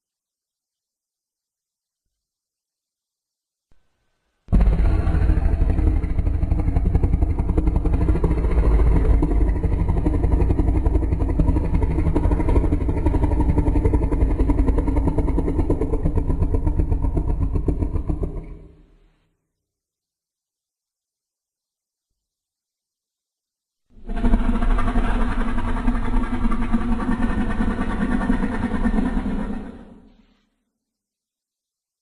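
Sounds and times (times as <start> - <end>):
monster roar: 4.5 - 18.8.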